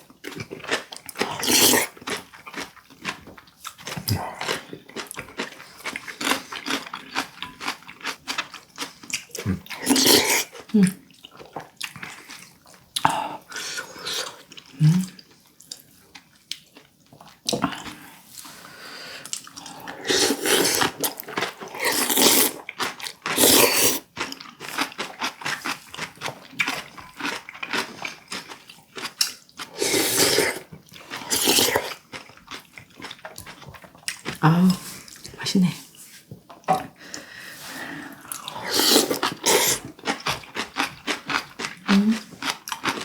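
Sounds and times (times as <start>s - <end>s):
chewing: 0.3s - 18.6s, 19.2s - 34.4s, 38.1s - 43.0s
wet slurping: 23.4s - 24.0s, 29.8s - 30.6s, 38.5s - 39.9s.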